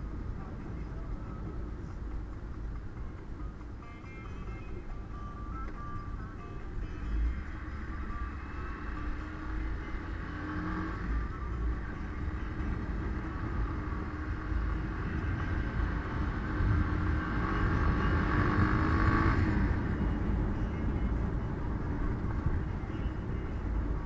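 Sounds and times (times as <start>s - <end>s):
car engine and road rumble: 0.0s - 24.0s.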